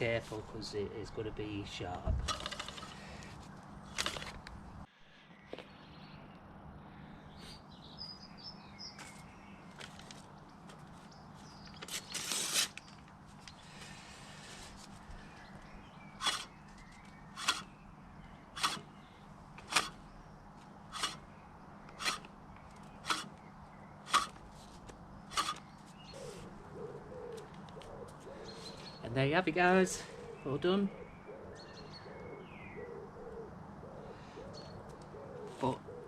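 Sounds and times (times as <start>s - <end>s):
paper rustling: 2.3s - 4.5s, 9.0s - 11.1s, 11.7s - 13.5s
mower blades snipping paper: 11.7s - 13.1s, 16.2s - 17.7s, 18.6s - 18.9s, 19.6s - 20.0s, 20.9s - 21.2s, 21.9s - 23.4s, 24.0s - 25.7s.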